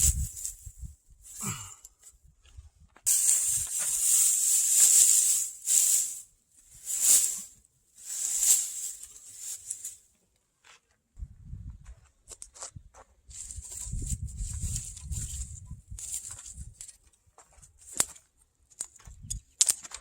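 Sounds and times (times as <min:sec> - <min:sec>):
hissing noise: 0:03.1 - 0:06.2, 0:06.8 - 0:10.0.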